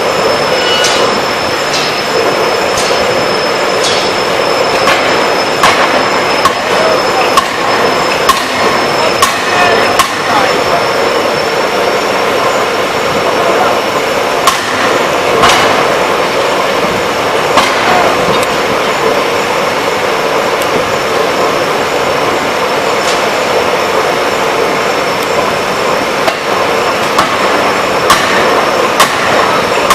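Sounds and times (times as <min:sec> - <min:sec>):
forging hammer strikes: 0:00.6 - 0:10.6, 0:14.3 - 0:16.2, 0:16.8 - 0:19.2, 0:26.2 - 0:29.9.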